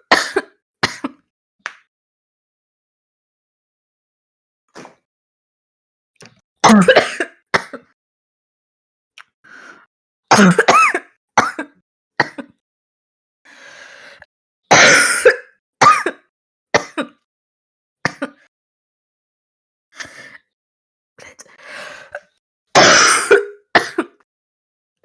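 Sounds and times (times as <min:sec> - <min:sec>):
woman coughing: 0:00.1 - 0:01.2, 0:06.6 - 0:07.9, 0:10.3 - 0:12.6, 0:14.7 - 0:16.2, 0:22.8 - 0:24.2
woman clearing throat: 0:06.6 - 0:07.9, 0:10.3 - 0:11.6
breaths: 0:09.4 - 0:09.9, 0:13.5 - 0:14.3, 0:20.0 - 0:20.5, 0:21.2 - 0:22.4.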